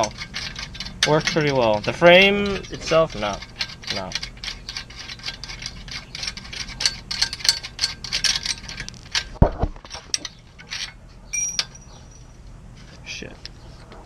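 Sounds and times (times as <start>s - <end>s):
ratchet wrench clicking: 0.0s - 9.4s
ringing metal clink: 11.3s - 12.3s.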